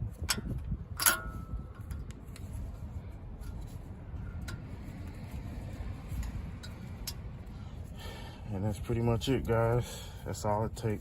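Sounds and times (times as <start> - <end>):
steady low rumble: 0.0 - 11.0
metal spring clip clicking: 0.2 - 2.2.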